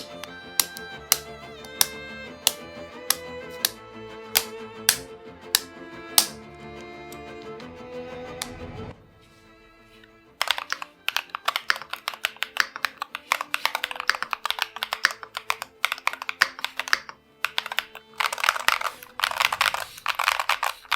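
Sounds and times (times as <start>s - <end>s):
mechanical keyboard typing: 0.0s - 3.8s, 10.4s - 20.9s
soft background music: 0.0s - 19.8s.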